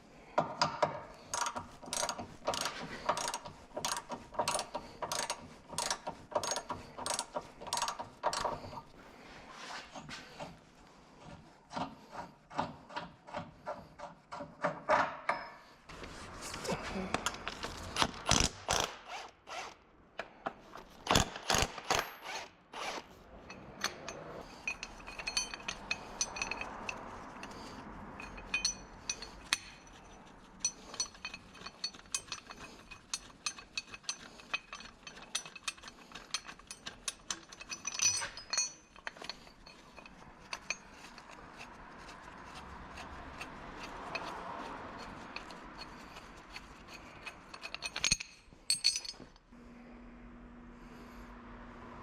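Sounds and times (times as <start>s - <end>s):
ratchet wrench clicking: 1.3s - 8.6s.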